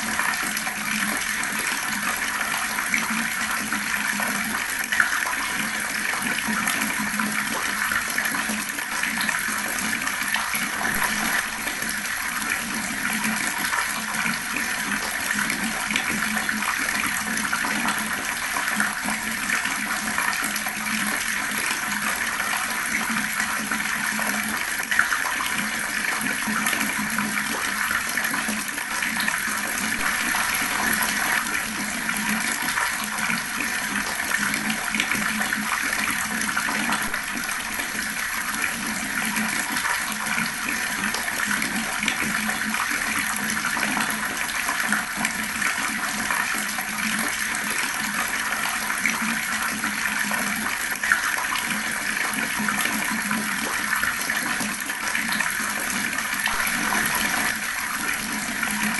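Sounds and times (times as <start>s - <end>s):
water rushing: 10.6s - 13.3s, 29.4s - 34.0s, 36.6s - 38.9s, 56.4s - 58.9s.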